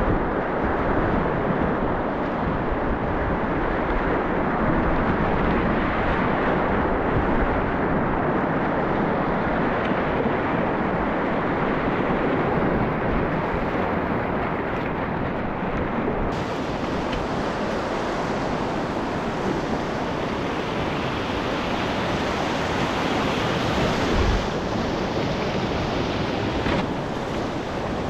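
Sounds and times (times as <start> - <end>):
whitewater rapids rushing: 9.3 - 28.0.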